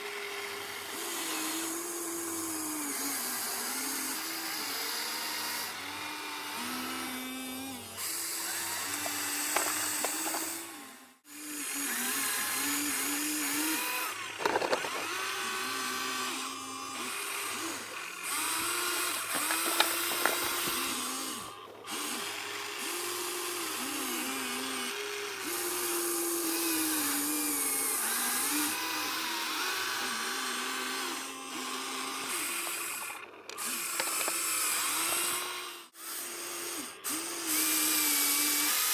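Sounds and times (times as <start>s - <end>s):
small electric motors whining: 0.0s - 38.9s
sharp clanks: 14.4s - 15.2s.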